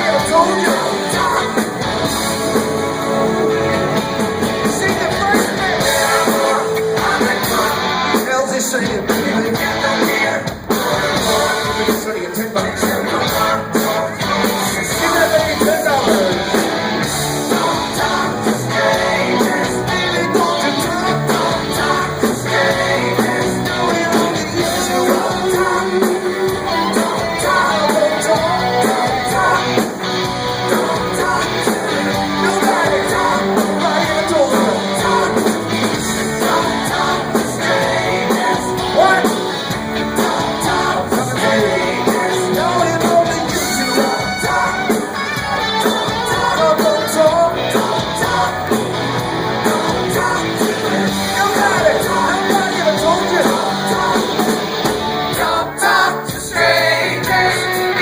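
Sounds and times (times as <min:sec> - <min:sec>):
person singing: 0:00.0 - 0:01.9, 0:02.5 - 0:16.6, 0:17.4 - 0:58.0
electric guitar playing: 0:00.0 - 0:08.3, 0:08.9 - 0:58.0.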